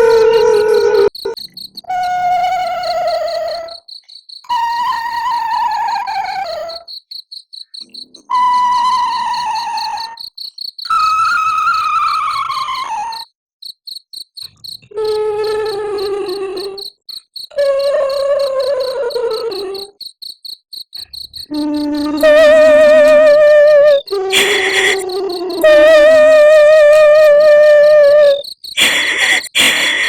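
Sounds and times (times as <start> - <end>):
crickets chirping: 0.0 - 30.0
ghostly woman wailing: 17.6 - 19.9, 21.5 - 30.0.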